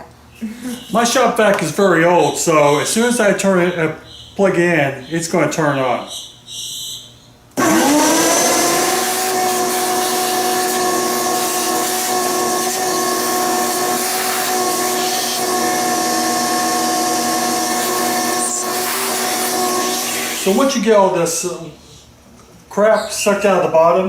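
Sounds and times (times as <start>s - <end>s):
shop vacuum motor whine: 7.6s - 20.9s.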